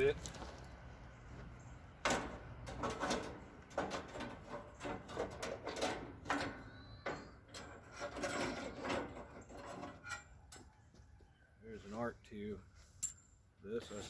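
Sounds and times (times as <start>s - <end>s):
sharp metallic knocks and clatters: 2.0s - 10.3s
metal scraping: 2.0s - 10.7s.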